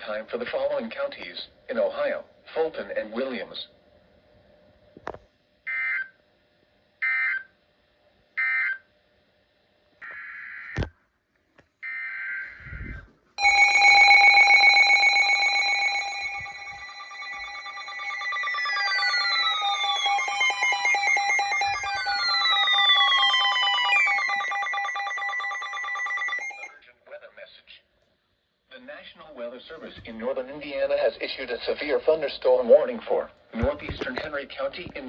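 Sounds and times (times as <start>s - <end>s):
screechy digital data bursts: 15.7s - 26.7s.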